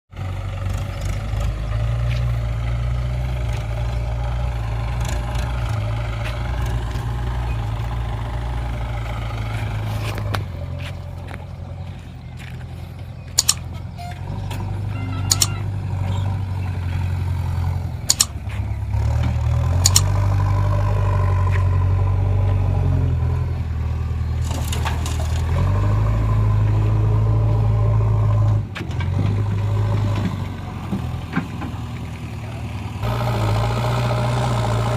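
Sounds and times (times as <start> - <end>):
heavy diesel engine running: 0.1 - 34.9
sharp metallic clanks: 13.3 - 15.7, 18.1 - 18.4, 19.8 - 20.2.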